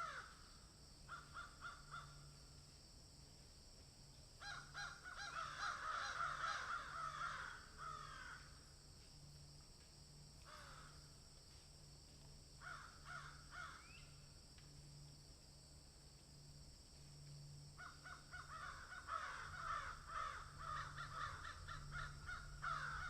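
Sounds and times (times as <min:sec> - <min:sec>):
birds cawing: 0:00.0 - 0:00.3, 0:04.4 - 0:08.5, 0:12.6 - 0:14.0, 0:17.8 - 0:23.0
high insect drone: 0:00.0 - 0:23.0.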